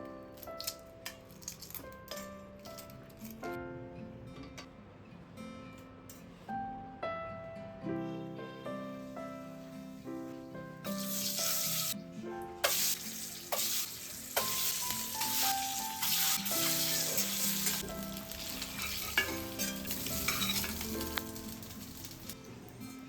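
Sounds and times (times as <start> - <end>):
soft plucked background music: 0.0 - 23.0
food sizzling in a pan: 10.9 - 12.0, 12.6 - 22.7.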